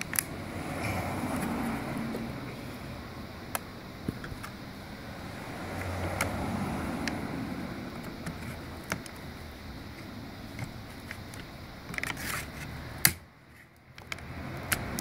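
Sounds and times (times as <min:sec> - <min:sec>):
plastic parts clicking and knocking: 0:10.6 - 0:13.2, 0:13.9 - 0:15.0.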